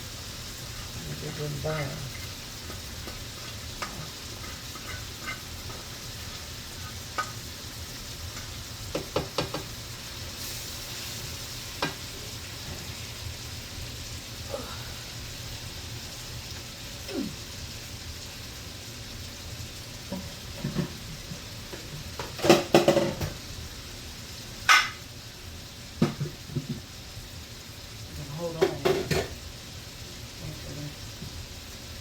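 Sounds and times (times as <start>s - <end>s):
food sizzling in a frying pan: 0.0s - 32.0s
utensil tapping against pan: 8.4s - 9.7s.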